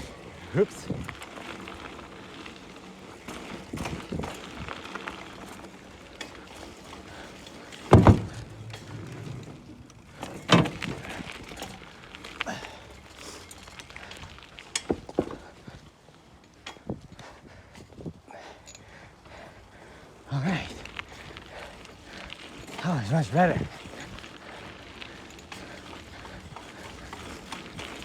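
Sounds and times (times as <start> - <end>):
bike rumble on dirt: 0.0 - 28.0
bike knocks and thuds: 7.8 - 11.8, 14.7 - 15.5.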